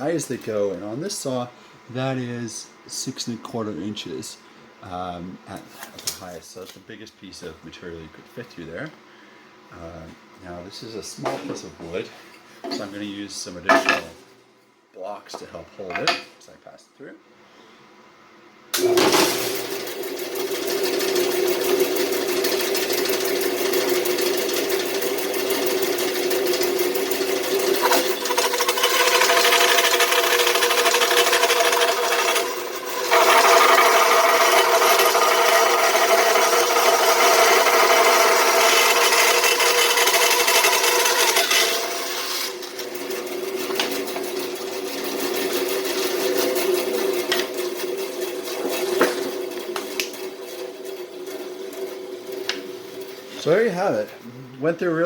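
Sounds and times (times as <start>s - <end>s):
bandsaw running: 18.8s - 54.1s
saw blade cutting wood: 22.3s - 53.6s.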